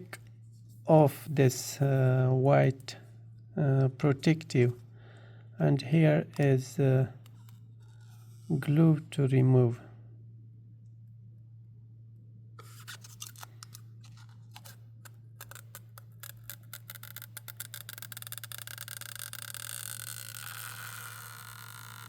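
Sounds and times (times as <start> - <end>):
low electrical hum: 0.0 - 22.0
film peeling with crackles: 12.6 - 22.0.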